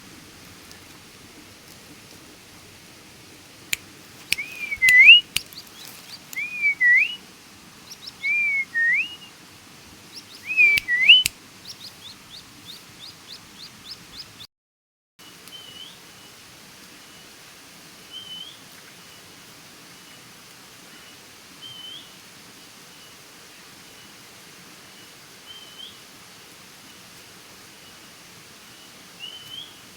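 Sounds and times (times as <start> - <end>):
sharp clicks: 4.3 - 6.5, 10.5 - 11.4
rapid high bird chirps: 4.3 - 7.2, 7.8 - 9.3, 10.0 - 14.5
whistled bird calls: 4.3 - 7.2, 7.9 - 9.3, 10.1 - 14.4.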